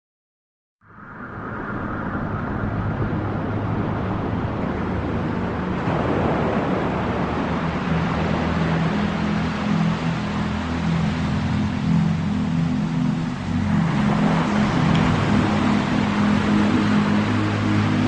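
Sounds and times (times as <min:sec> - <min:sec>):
electronic trance music: 0:08.3 - 0:18.0.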